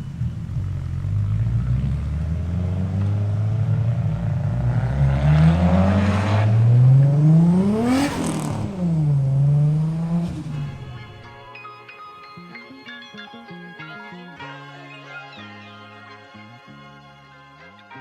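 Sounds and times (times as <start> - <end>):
car engine accelerating past: 0.0 - 11.5.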